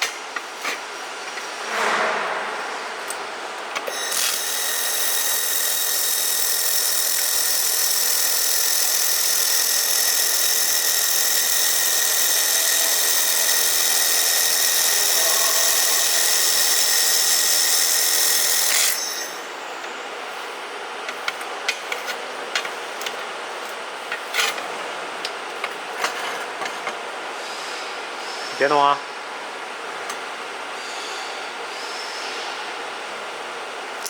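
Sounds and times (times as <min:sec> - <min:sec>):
laser welder hiss and whine: 0:03.9 - 0:20.6.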